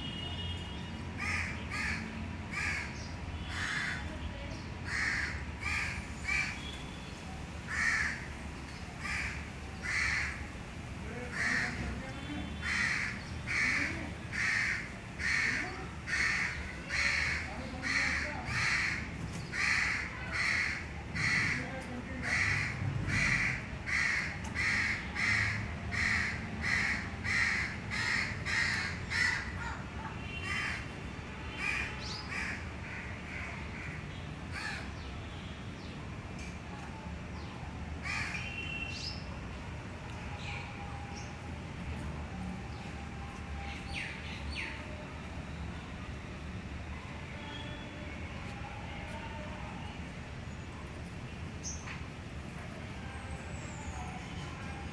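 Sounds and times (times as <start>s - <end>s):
crow cawing: 1.2s - 4.1s, 4.9s - 6.7s, 7.7s - 8.3s, 9.0s - 10.5s, 11.3s - 11.9s, 12.6s - 29.8s, 30.4s - 30.8s.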